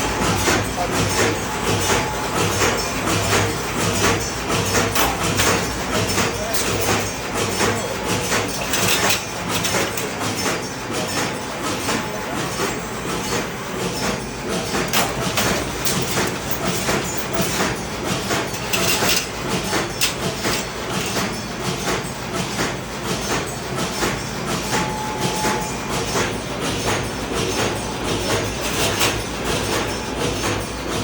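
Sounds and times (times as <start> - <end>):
metal clicks and knocks: 14.6 - 21.3.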